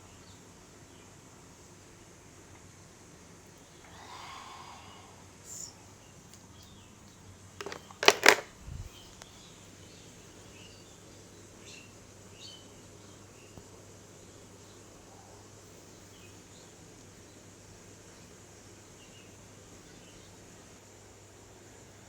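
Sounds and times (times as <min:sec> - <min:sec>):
sharp cracks: 0:07.6 - 0:08.5.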